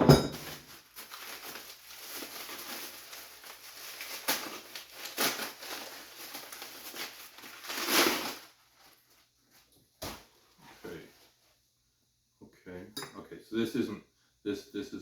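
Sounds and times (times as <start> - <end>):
wrapping rustling: 0.4 - 11.5.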